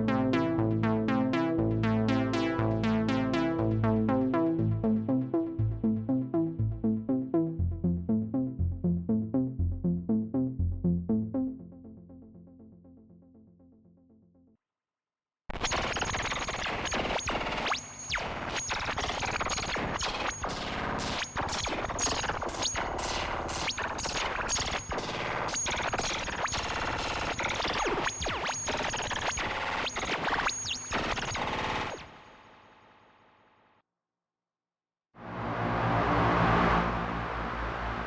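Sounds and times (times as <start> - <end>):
synthesizer noise rush: 35.2 - 38.0.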